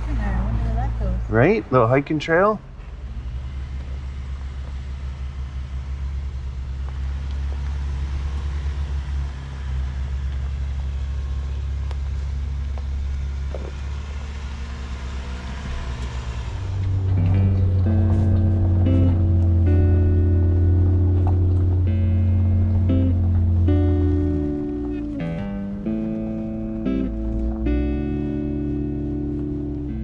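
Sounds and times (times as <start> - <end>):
rushing road noise: 0.0 - 30.0
vehicle engine drone: 0.0 - 30.0
music: 17.0 - 30.0.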